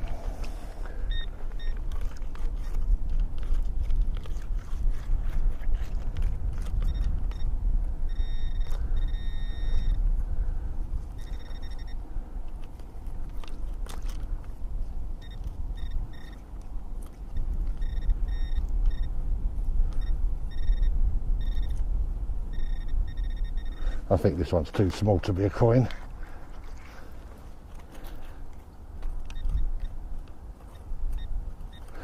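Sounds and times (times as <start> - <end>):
wind rumble on microphone: 0.0 - 24.1
metal detector beeping: 0.9 - 2.8, 6.7 - 10.2, 11.1 - 12.1, 15.2 - 16.6, 17.7 - 19.2, 19.8 - 21.8, 22.5 - 24.3, 29.2 - 32.0.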